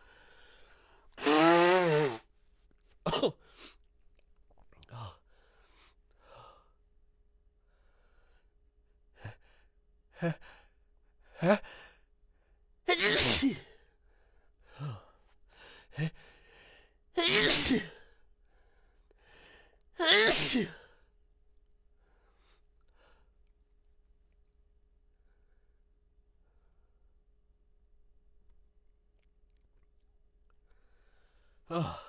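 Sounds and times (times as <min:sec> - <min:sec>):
man sneezing: 0:01.2 - 0:02.2, 0:12.9 - 0:13.6, 0:17.2 - 0:17.9, 0:20.0 - 0:20.8
sharp rising in-breaths: 0:01.2 - 0:02.2.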